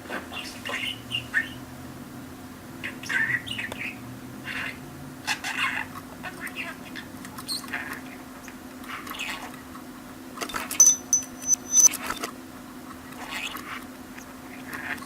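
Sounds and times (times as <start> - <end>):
low hum: 10.8 - 11.9
thin high whistle: 10.8 - 11.9.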